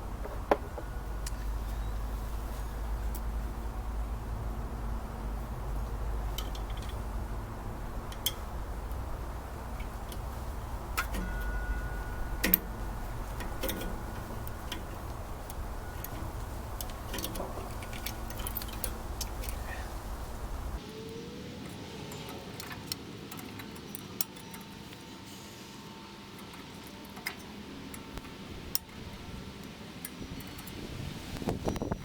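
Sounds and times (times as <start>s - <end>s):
steady low hum: 0.0s - 22.6s
light metal clicks and taps: 6.3s - 7.1s, 8.1s - 20.7s, 22.1s - 25.0s, 26.4s - 31.9s.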